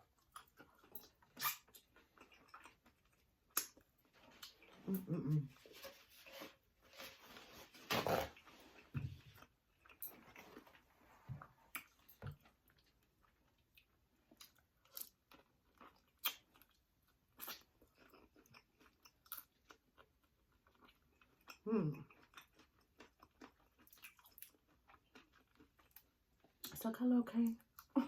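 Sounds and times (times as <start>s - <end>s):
person chewing food: 0.0s - 26.8s.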